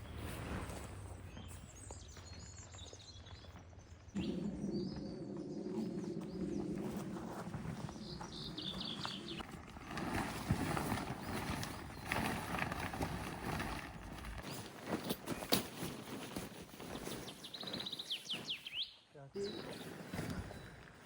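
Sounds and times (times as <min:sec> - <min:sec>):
bird chirping: 0:00.0 - 0:09.5, 0:16.8 - 0:20.9.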